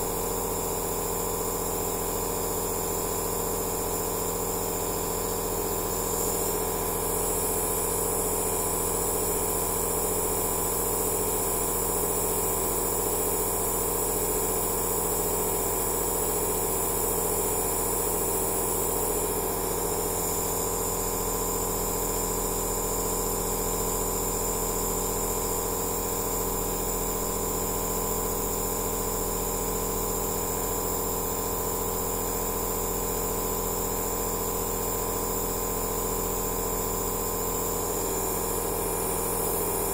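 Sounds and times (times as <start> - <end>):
nebulizer motor hum: 5.2 - 28.4, 36.6 - 39.9.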